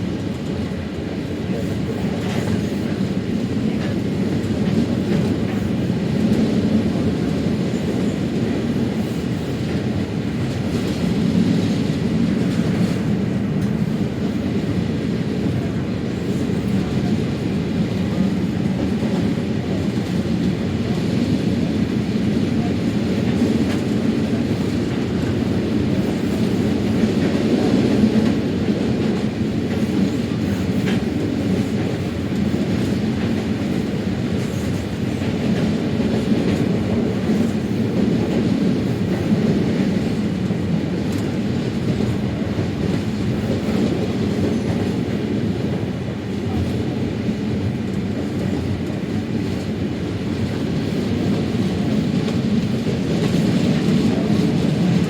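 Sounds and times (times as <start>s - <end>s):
moving train rumble: 0.0s - 55.0s.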